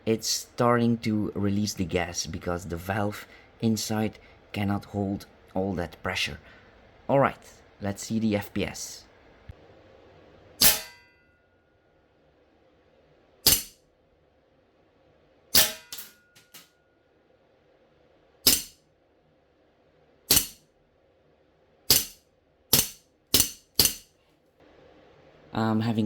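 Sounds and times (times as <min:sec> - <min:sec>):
airsoft pistol shots: 0:20.3 - 0:20.6.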